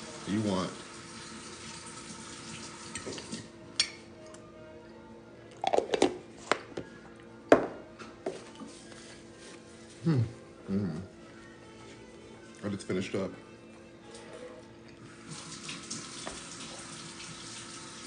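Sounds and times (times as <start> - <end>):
faint background music: 0.0 - 18.0
utensils clinking against dishes: 3.0 - 4.1.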